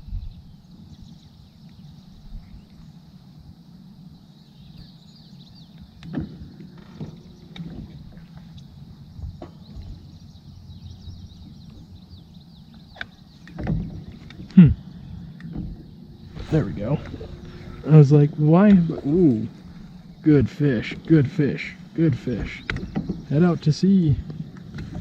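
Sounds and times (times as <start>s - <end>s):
wind buffeting microphone: 5.8s - 25.0s.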